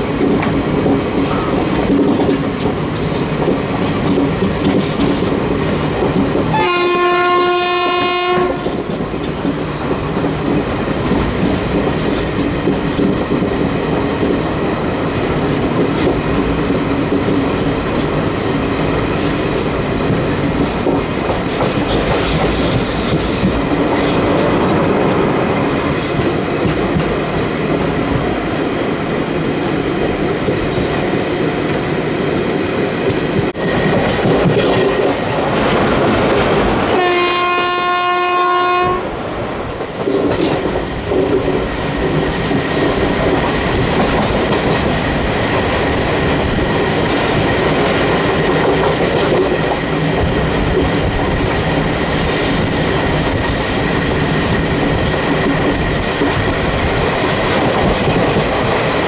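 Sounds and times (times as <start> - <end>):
train running on track: 0.0 - 59.0
train horn blast: 6.5 - 8.8, 36.9 - 39.1.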